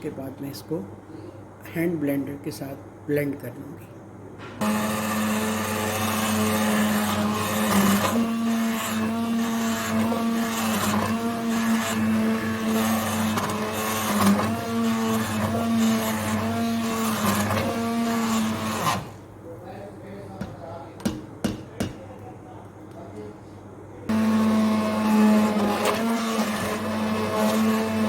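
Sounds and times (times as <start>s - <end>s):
hand blender motor running: 4.6s - 19.2s, 24.1s - 28.0s.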